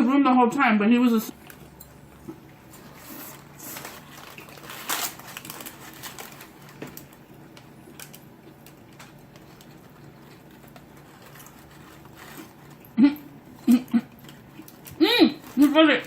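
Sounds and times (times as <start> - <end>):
faint steady hum: 0.0 - 16.0
chewing food: 1.3 - 15.7
wrapper rustling: 2.6 - 13.0.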